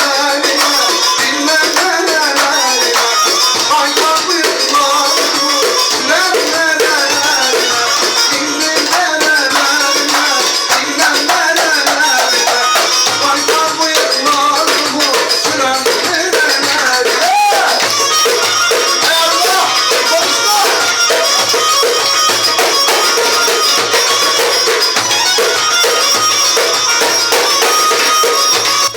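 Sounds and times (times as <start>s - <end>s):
dance music: 0.0s - 28.9s
percussion beat: 0.0s - 28.9s
sliding melody: 0.0s - 28.9s.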